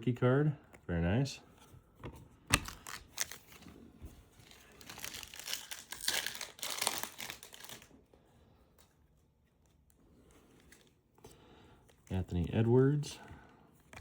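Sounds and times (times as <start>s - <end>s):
foil wrapper crinkling: 2.6s - 3.6s, 4.4s - 7.9s.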